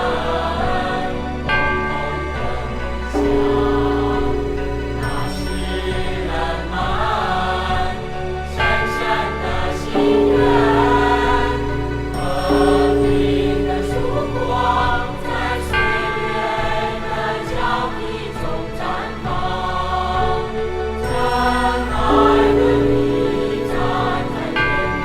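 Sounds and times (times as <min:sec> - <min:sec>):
choir singing with accompaniment: 0:00.0 - 0:25.0.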